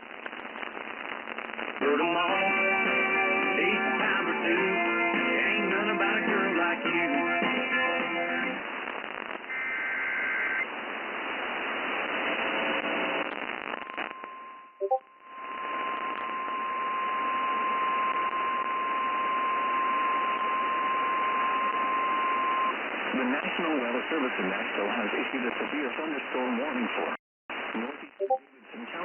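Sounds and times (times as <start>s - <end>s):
radio static hiss: 0.0s - 29.0s
country song on radio: 0.2s - 14.1s, 20.3s - 29.0s.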